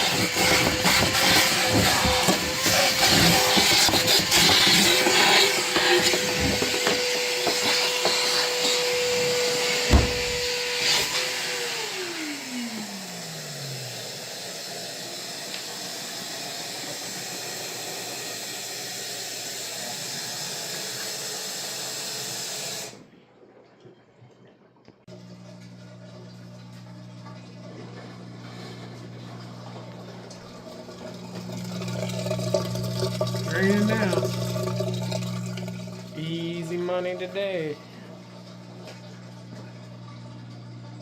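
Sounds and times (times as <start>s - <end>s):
electric motor whining: 0.0s - 13.9s
knock: 9.9s - 10.4s.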